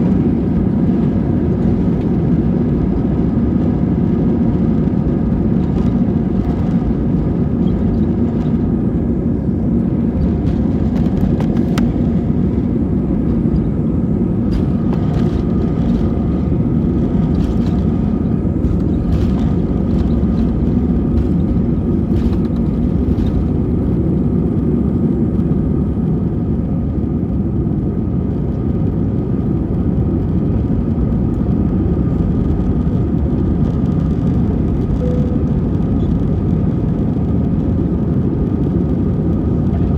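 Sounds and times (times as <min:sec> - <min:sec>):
airliner engine rumble and whine: 0:00.0 - 0:39.9
light rattles and clicks: 0:14.5 - 0:23.7.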